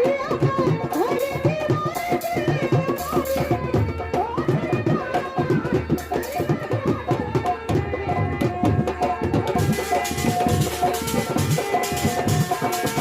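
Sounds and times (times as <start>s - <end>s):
ornamented folk melody: 3.2s - 13.0s
hand drum strokes: 4.9s - 13.0s.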